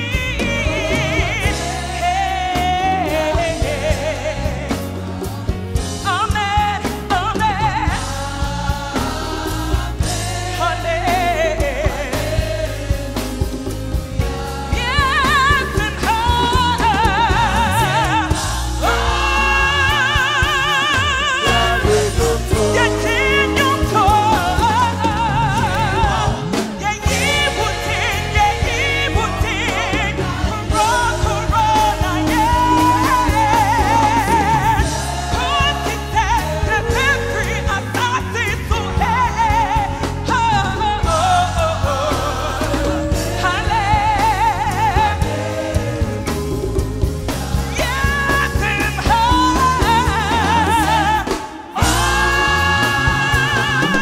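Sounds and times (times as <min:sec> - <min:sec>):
band with bass line: 0:00.0 - 0:54.0
person singing with vibrato: 0:14.3 - 0:54.0.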